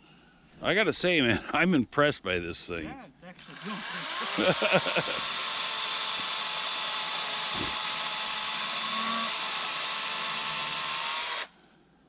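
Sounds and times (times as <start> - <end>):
chainsaw cutting wood: 3.4 - 11.6.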